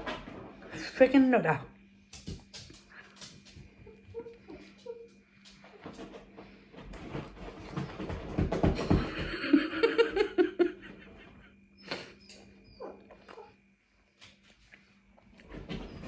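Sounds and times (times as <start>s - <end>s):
dog whining: 3.8s - 5.2s, 11.8s - 13.6s
dog thumping and scuffling: 5.7s - 10.1s.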